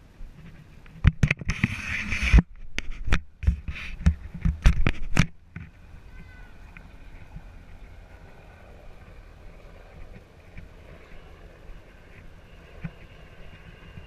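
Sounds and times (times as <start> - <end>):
faint steady hum: 0.0 - 14.0
scraping or rustling bursts: 0.3 - 6.3.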